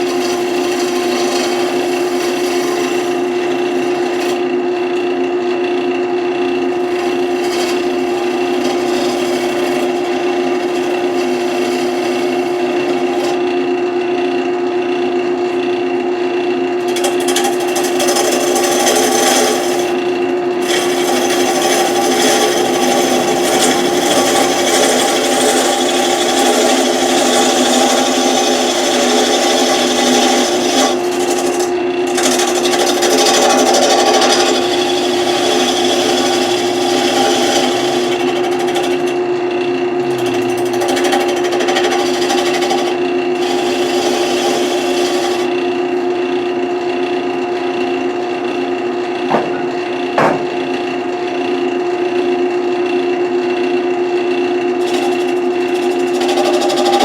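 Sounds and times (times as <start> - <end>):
turning tool scraping wood: 0.0 - 13.8, 16.8 - 46.7, 54.8 - 57.0
wood lathe motor hum: 0.0 - 57.0
short sharp knocks: 49.3 - 50.7.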